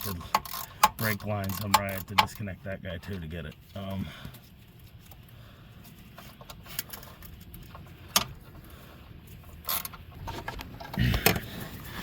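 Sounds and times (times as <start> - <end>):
metal clicks of hand tools: 0.0 - 2.5.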